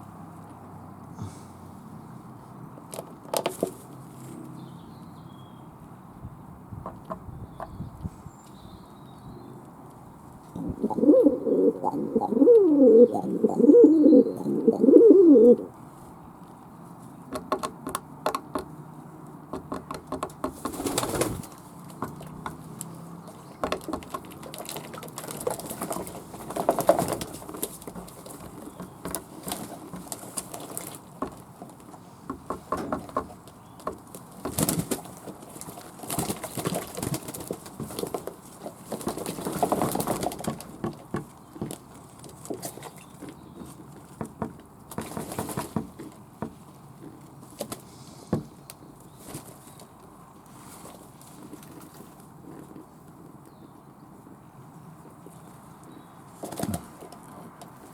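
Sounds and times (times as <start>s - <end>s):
doves cooing: 10.5s - 15.8s
birds rushing about: 19.5s - 46.3s.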